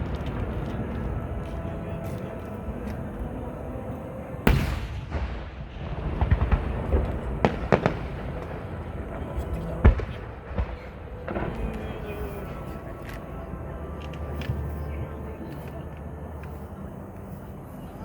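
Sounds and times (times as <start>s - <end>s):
murmur of voices: 0.0s - 18.0s
firework boom: 4.5s - 12.1s
firework cracks and pops: 4.5s - 13.3s.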